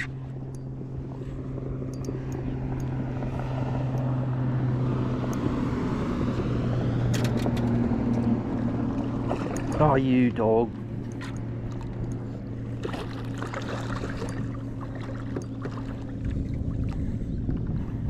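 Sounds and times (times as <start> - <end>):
boat motor humming: 0.0 - 18.0
water noise: 0.0 - 18.0
wind: 0.0 - 18.0.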